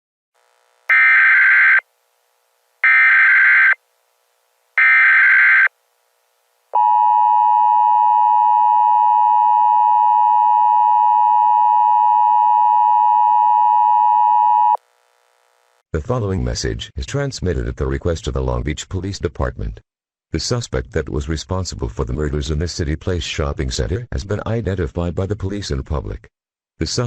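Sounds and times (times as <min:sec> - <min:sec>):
two-tone alarm: 0:00.9 - 0:01.8, 0:02.8 - 0:03.8, 0:04.8 - 0:05.7.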